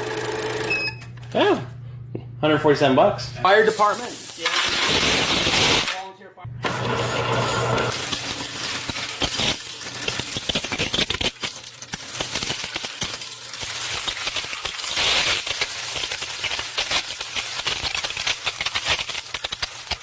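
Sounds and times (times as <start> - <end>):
coins clinking and rattling: 7.9 - 20.0.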